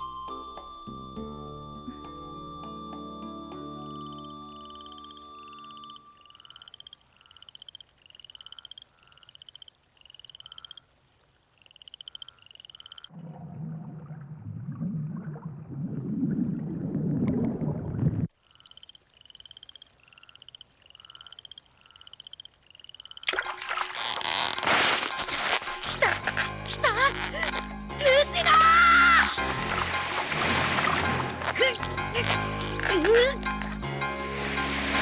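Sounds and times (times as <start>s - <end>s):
frogs croaking: 4.0s - 13.2s, 18.3s - 24.6s.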